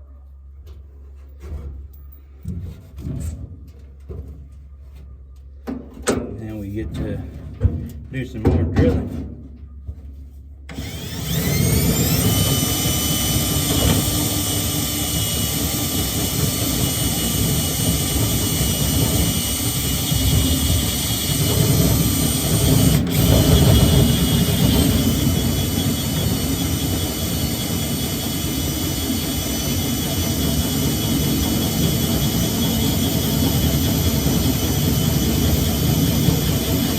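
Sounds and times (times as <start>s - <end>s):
electric drill drilling: 10.7s - 36.9s.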